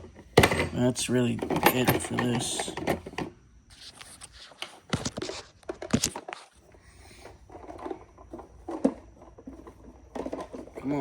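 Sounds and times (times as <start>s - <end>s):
tool cases clicking and knocking: 0.0s - 3.4s.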